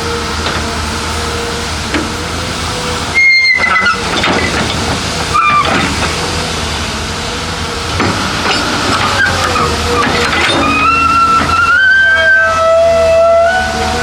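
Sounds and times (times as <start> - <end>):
heavy machinery running: 0.0 - 14.0
short high-pitched squeals: 2.7 - 4.6, 5.3 - 6.0, 8.5 - 14.0.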